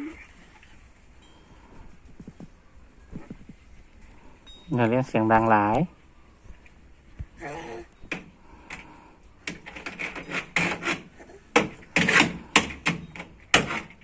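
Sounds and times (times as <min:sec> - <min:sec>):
toy vehicles clacking and scraping: 0:08.1 - 0:14.0.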